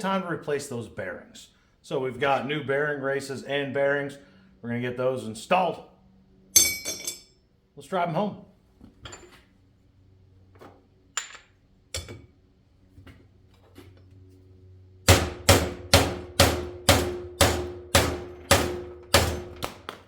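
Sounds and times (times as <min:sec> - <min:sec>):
hammer striking metal: 0:06.6 - 0:07.3, 0:15.0 - 0:19.7.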